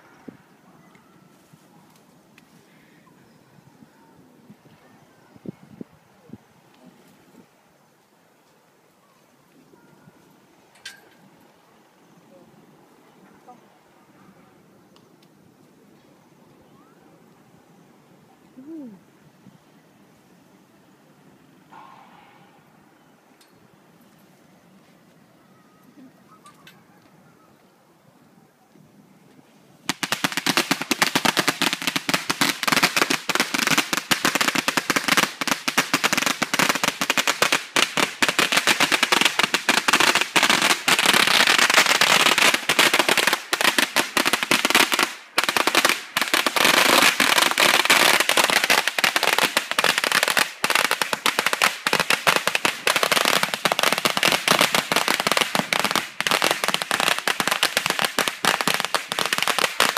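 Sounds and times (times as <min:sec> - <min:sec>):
firecrackers going off: 0:29.9 - 0:59.9.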